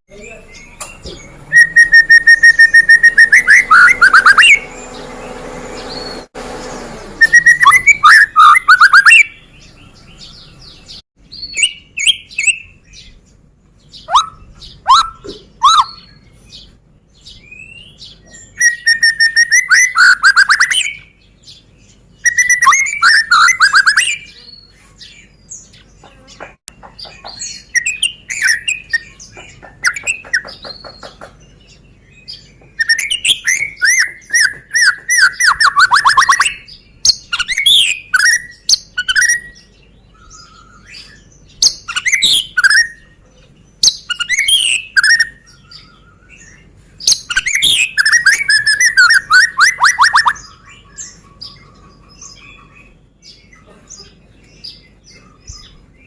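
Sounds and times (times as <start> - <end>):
bird chirps: 0.1 - 56.0
bird singing whistled phrases: 0.6 - 4.9, 7.2 - 9.4, 11.4 - 12.8, 14.0 - 16.2, 17.3 - 21.1, 22.2 - 24.4, 27.6 - 29.1, 32.8 - 43.2, 43.8 - 51.1.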